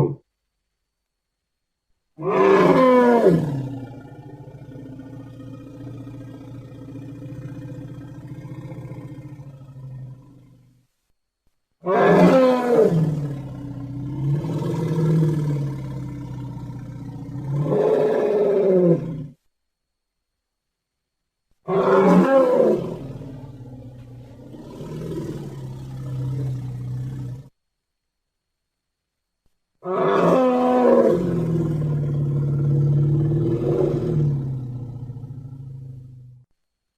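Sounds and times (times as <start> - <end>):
elephant roaring and rumbling: 2.2 - 10.6, 11.8 - 19.4, 21.7 - 27.5, 29.8 - 36.4.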